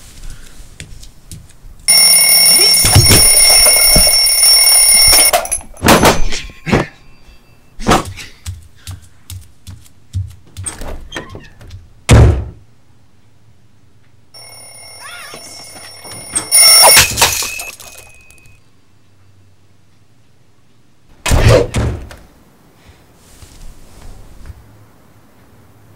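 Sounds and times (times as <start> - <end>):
ringing steady tones: 1.9 - 7.8, 14.4 - 18.6.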